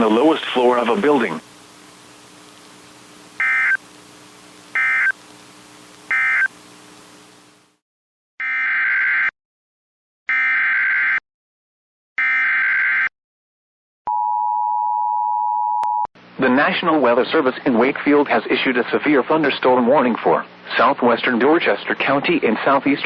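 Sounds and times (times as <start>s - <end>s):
data bursts: 3.4s - 3.9s, 4.7s - 5.3s, 6.1s - 6.6s
two-tone attention signal: 6.1s - 6.5s.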